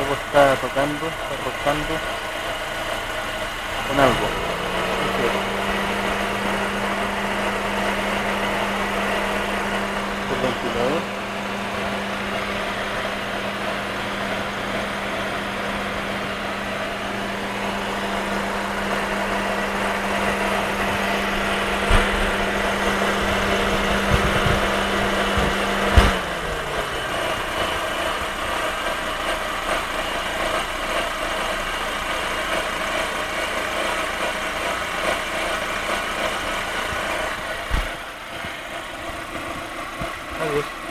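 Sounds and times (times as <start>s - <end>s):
car engine idling: 0.0s - 40.9s
radiator fan humming: 0.0s - 40.9s.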